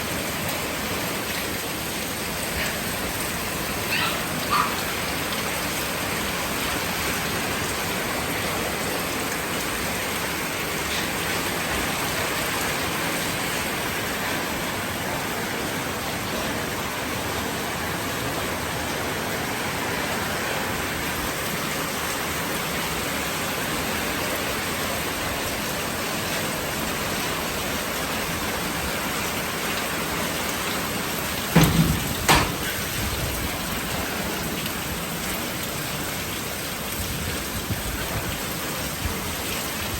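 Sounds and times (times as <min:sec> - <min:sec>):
rain hissing: 0:00.0 - 0:39.9
loud thumps: 0:31.6 - 0:32.8.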